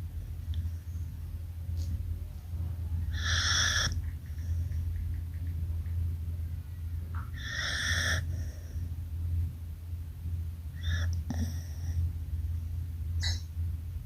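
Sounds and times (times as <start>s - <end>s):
dog snoring: 3.1s - 4.0s, 7.4s - 8.7s, 10.8s - 12.0s.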